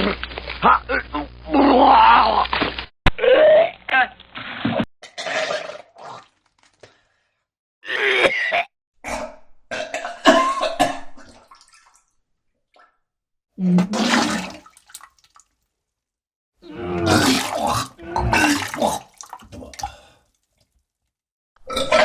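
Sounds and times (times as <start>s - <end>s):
person retching and vomiting: 0.0s - 6.4s, 7.8s - 11.5s, 13.6s - 15.2s, 16.6s - 20.3s, 21.6s - 22.0s.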